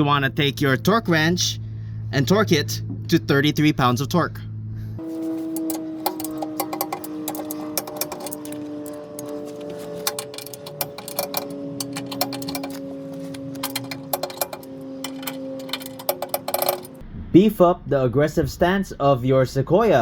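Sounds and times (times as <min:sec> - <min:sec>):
torque wrench clicking: 0:05.0 - 0:17.0.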